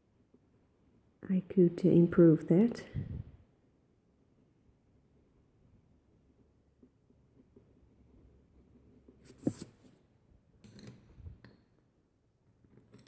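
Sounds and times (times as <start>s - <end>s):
pencil scratching on paper: 0.0s - 1.2s, 4.0s - 9.9s.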